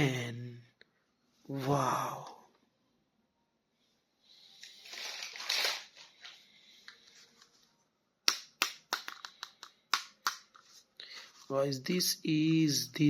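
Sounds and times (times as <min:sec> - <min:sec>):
plastic crinkling: 0:04.6 - 0:06.4.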